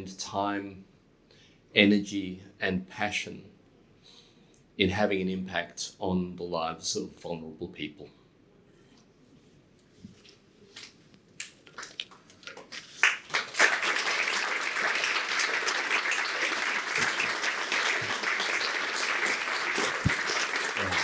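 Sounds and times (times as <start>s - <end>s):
audience applause: 13.0s - 21.0s.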